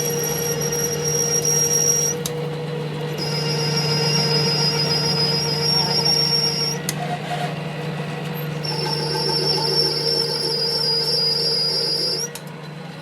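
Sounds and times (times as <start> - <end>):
high-pitched machine whine: 0.0 - 13.0
machine humming: 0.0 - 13.0.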